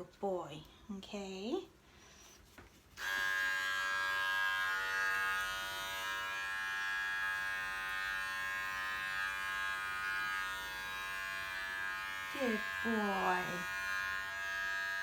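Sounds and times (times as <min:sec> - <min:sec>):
electric trimmer humming: 0:03.0 - 0:15.0.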